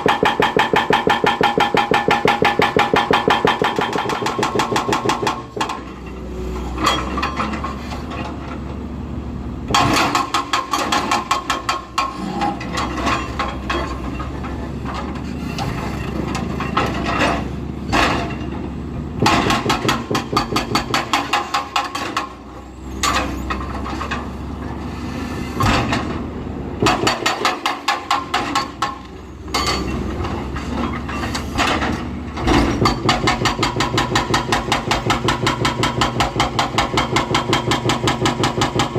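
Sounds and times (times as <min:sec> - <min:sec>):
breaker hammering concrete: 0:00.0 - 0:05.9, 0:19.2 - 0:22.4, 0:26.8 - 0:29.9, 0:31.7 - 0:38.9.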